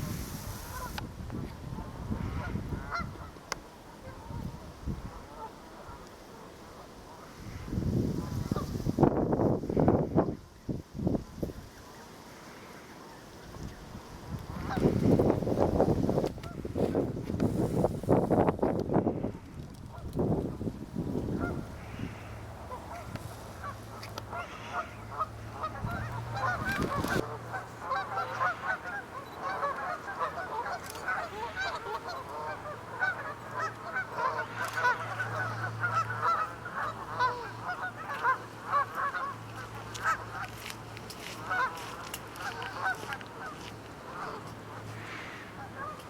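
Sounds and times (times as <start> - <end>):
wind rumble on microphone: 0.0 - 6.0, 7.2 - 11.8, 13.5 - 46.0
geese honking: 0.6 - 1.0, 1.8 - 4.5, 5.1 - 7.4, 14.5 - 15.3, 21.3 - 46.0.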